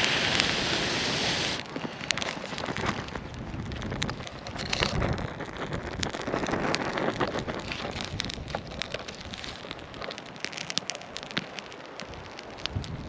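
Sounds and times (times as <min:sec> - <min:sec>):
wind gusting through forest: 0:00.0 - 0:10.5, 0:11.2 - 0:13.0
sharp crackles and ticks: 0:00.0 - 0:13.0.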